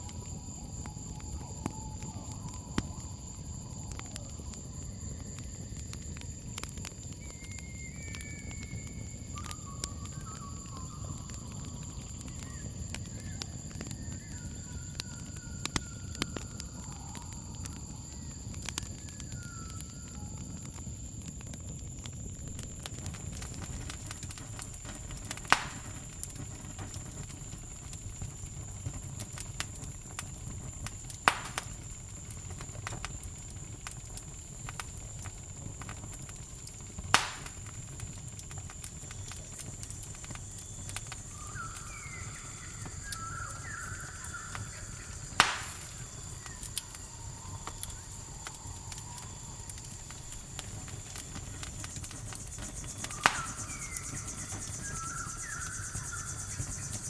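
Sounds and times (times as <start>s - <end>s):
campfire popping: 0.0s - 57.0s
crickets chirping: 0.0s - 57.0s
short chirping calls: 41.1s - 48.3s, 52.6s - 57.0s.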